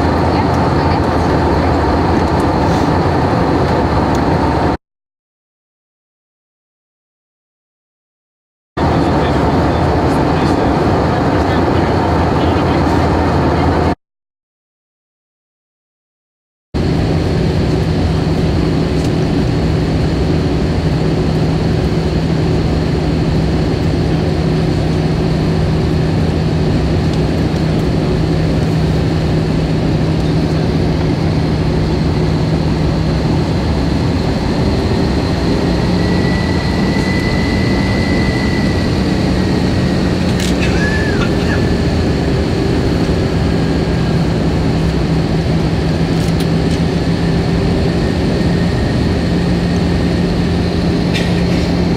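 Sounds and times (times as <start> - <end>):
airliner cabin engine drone: 0.0 - 4.8, 8.8 - 14.0, 16.8 - 51.9.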